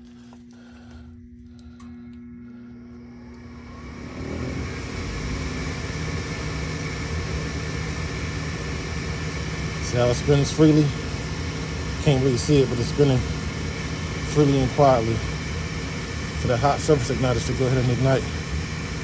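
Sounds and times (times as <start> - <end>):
faint steady hum: 0.0 - 19.0
draft motor whirring: 2.8 - 18.7.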